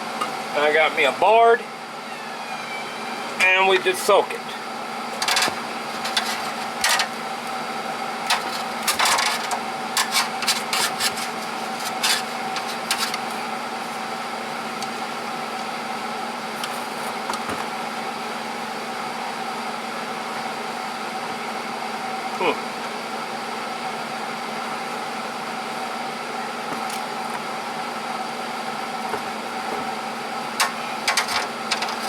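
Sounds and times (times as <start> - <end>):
wooden board knocks and scrapes: 29.1 - 29.9.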